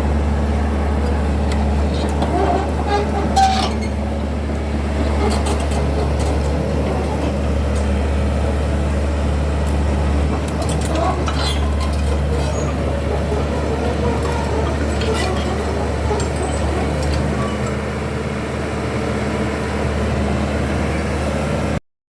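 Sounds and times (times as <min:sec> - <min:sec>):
bulldozer diesel engine running: 0:00.0 - 0:21.8.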